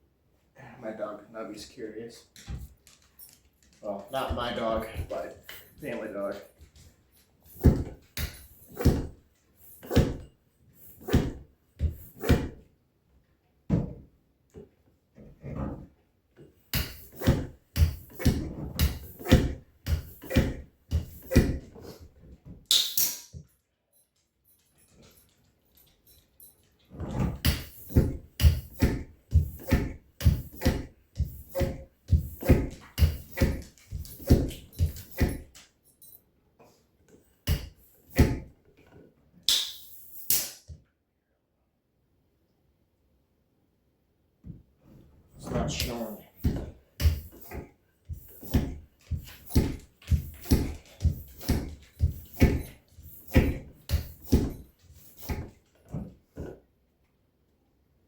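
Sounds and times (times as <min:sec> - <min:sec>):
sharp knocks and thumps: 0:07.5 - 0:09.2, 0:09.8 - 0:10.3, 0:11.0 - 0:12.6, 0:16.7 - 0:21.8, 0:26.9 - 0:35.6, 0:37.4 - 0:38.5, 0:45.4 - 0:56.6.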